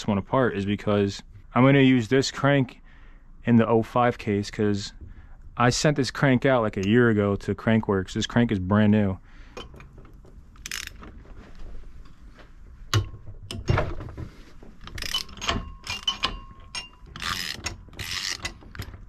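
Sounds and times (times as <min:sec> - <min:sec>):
hand ratchet clicking: 0:10.6 - 0:11.0, 0:14.8 - 0:19.0
metal tools clinking: 0:14.8 - 0:19.0.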